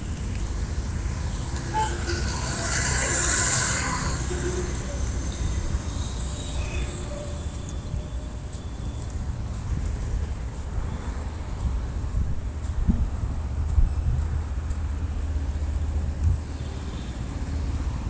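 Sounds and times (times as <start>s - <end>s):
vehicle passing close: 0.0s - 7.9s
traffic rumble: 0.0s - 18.0s.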